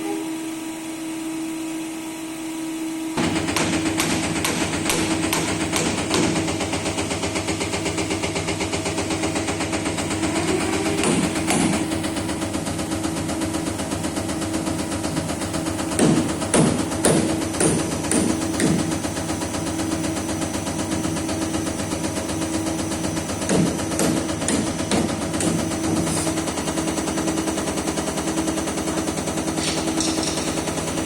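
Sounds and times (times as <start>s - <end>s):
test bench humming: 0.0s - 31.0s
loud knocks: 3.2s - 6.6s.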